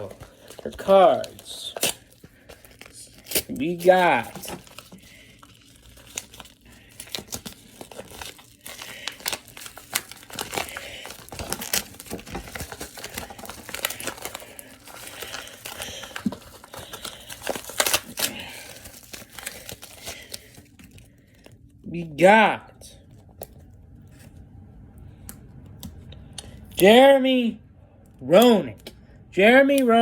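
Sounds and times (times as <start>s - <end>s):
wrapper crinkling and tearing: 0.0s - 21.5s.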